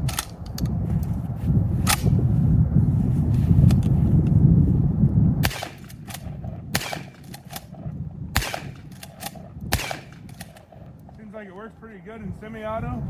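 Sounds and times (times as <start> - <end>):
low rumble: 0.0 - 13.0
shotgun shots: 5.4 - 10.8.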